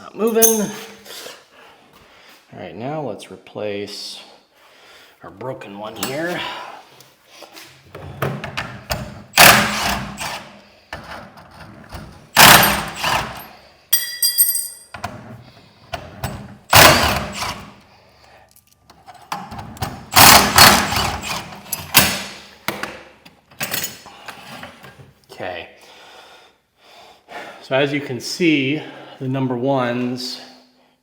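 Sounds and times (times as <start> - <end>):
metallic clinks of hardware: 0.2 - 1.0, 13.9 - 15.0
impact wrench bursts: 9.3 - 10.5, 12.4 - 13.5, 16.7 - 17.7, 20.1 - 22.4.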